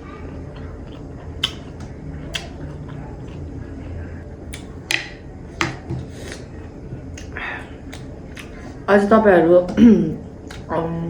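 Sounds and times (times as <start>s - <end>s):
low hum: 0.0s - 11.0s
mouth clicks and lip smacks: 0.6s - 3.4s, 4.5s - 5.1s, 7.1s - 8.6s.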